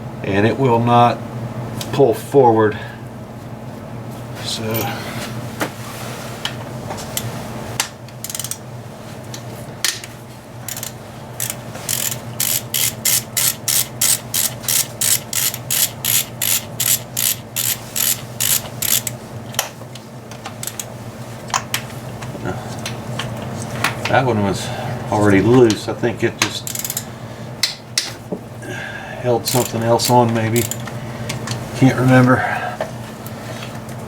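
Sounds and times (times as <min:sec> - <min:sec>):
steady low hum: 0:00.0 - 0:34.0
ratchet wrench clicking: 0:08.2 - 0:08.6, 0:10.7 - 0:19.2, 0:20.6 - 0:20.9, 0:26.6 - 0:27.1, 0:29.4 - 0:30.9.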